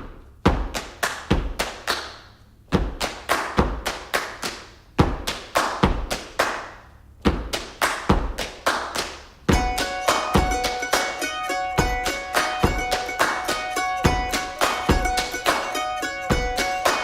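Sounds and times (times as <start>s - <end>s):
foot-stomp thuds: 0.0s - 1.6s, 2.7s - 3.9s, 4.9s - 6.2s, 7.2s - 8.6s, 9.5s - 10.9s, 11.8s - 17.0s
hand claps: 0.5s - 17.0s.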